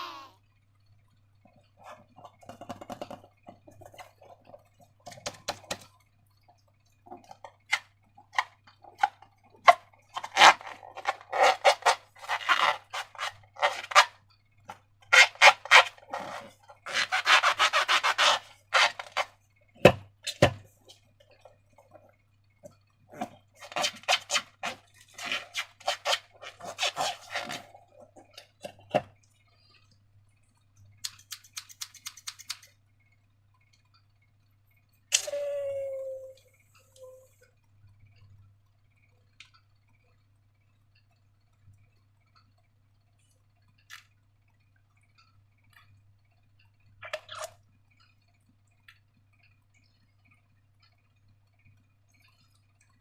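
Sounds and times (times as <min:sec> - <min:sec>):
faint low hum: 0:00.0 - 0:17.2, 0:32.2 - 0:53.0.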